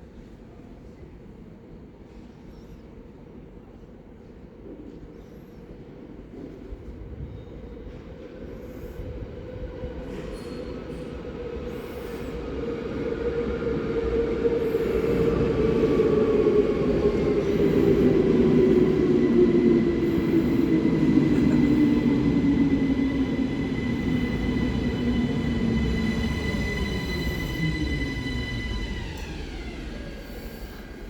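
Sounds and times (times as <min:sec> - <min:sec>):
electric train rumble: 0:07.0 - 0:31.0
motor whine sliding down: 0:23.8 - 0:31.0.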